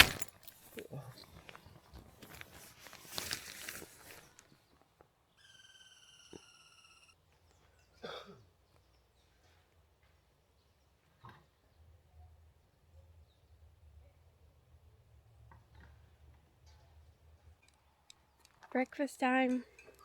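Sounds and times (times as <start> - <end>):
faint clattering and handling: 0.0 - 5.2.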